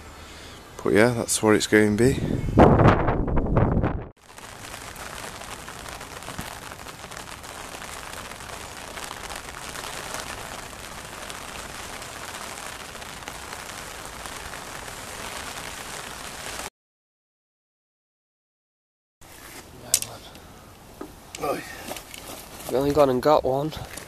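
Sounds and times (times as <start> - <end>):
steady rain falling: 4.2 - 16.7, 19.3 - 24.0.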